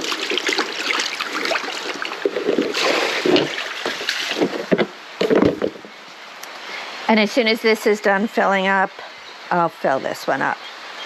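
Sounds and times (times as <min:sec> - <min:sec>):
water from hose filling container: 0:00.0 - 0:04.8.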